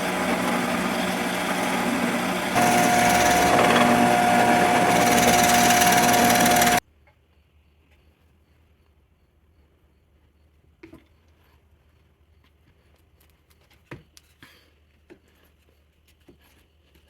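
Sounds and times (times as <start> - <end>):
high machine whine: 0.0 - 6.8
woodworking machine motor hum: 0.0 - 6.8.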